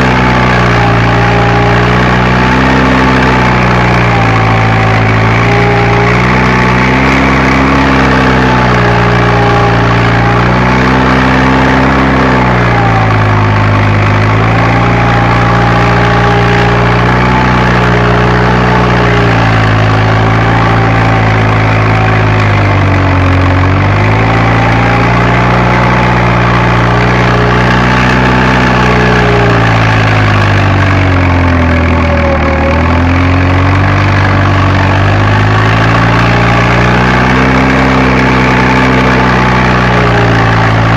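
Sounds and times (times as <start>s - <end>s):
tractor diesel engine under load: 0.0s - 40.9s.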